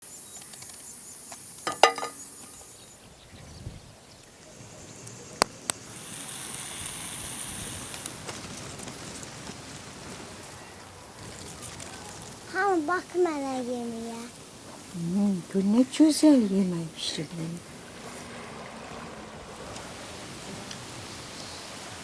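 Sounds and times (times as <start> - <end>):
insect-like hiss: 0.0 - 22.0.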